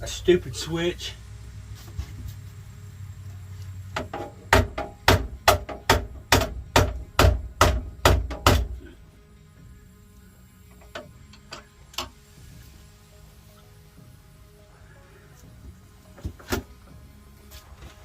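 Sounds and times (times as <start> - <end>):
sharp knocks: 4.0 - 8.8.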